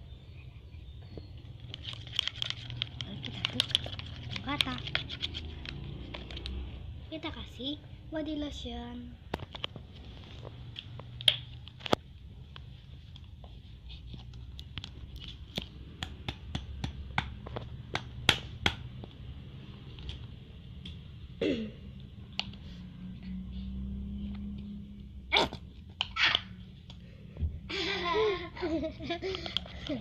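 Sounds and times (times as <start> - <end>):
stirrer clicking on container: 1.6 - 6.6.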